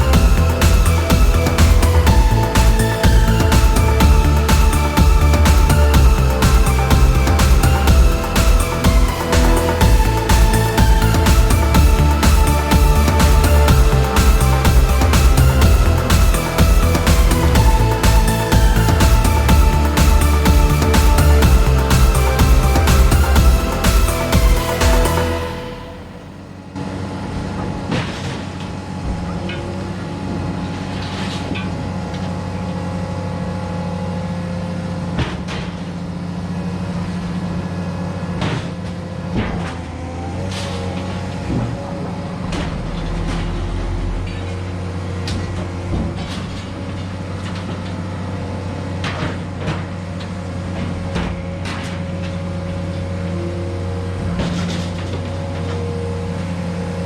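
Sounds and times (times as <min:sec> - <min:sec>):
engine running: 0:00.0 - 0:27.0, 0:39.3 - 0:57.0.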